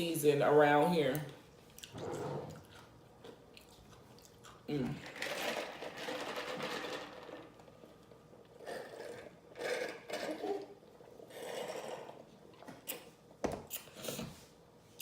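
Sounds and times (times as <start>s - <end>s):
chewing and lip-smacking: 1.6s - 4.7s.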